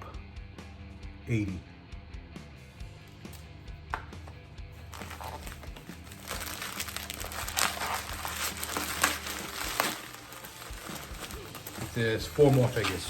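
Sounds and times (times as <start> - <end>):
plastic packaging crinkling and tearing: 4.8 - 13.0.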